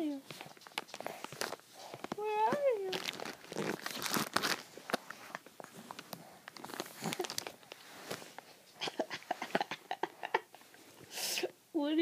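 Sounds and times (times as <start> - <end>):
soft rustling: 0.0 - 11.1.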